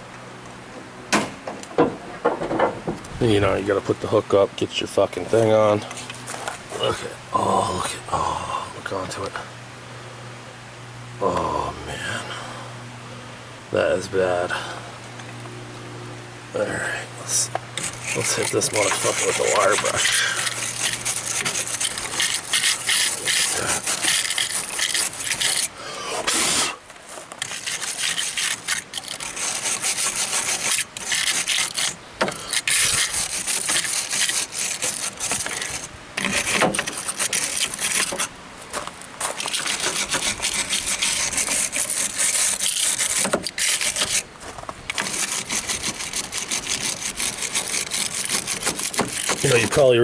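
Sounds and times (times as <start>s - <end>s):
wire brush scrubbing metal: 16.7s - 38.4s, 39.2s - 44.3s, 44.9s - 50.0s.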